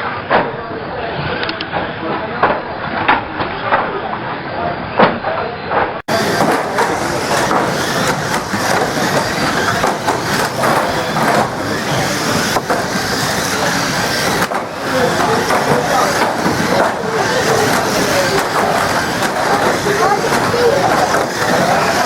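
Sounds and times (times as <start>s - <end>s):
cars knocking and banging: 6.1s - 22.0s
racing car engines: 6.1s - 22.0s.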